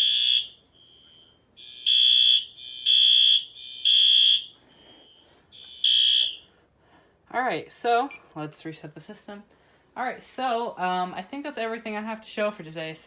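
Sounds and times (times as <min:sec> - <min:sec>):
faint alarm tone: 0:00.0 - 0:06.5
fire alarm horn blasts: 0:00.0 - 0:06.5.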